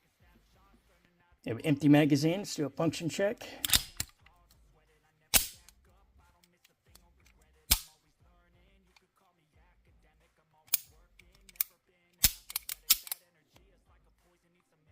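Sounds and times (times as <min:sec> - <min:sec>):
pistol action metallic snaps: 0:03.6 - 0:04.3, 0:05.3 - 0:05.8, 0:06.4 - 0:08.0, 0:10.7 - 0:13.2.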